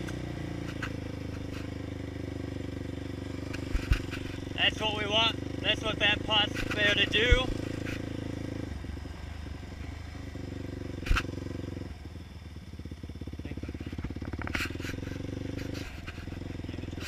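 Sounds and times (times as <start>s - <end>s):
quad engine running: 0.0s - 17.0s.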